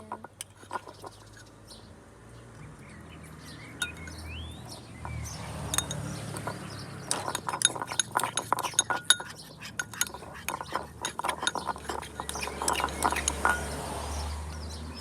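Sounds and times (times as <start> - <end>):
utensil clinking against container: 0.0 - 1.6, 3.8 - 4.3, 5.0 - 14.8.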